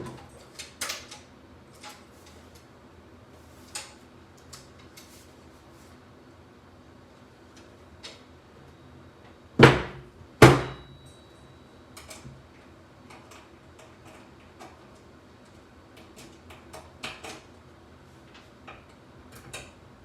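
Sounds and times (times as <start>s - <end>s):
loud ringing knocks: 9.6s - 10.9s.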